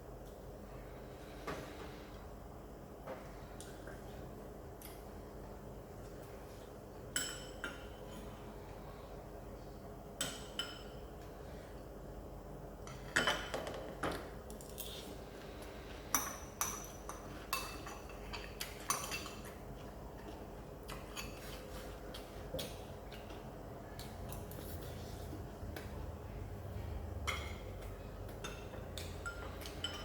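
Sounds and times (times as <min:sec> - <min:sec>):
cutlery clinking against dishes: 0:28.4 - 0:30.0.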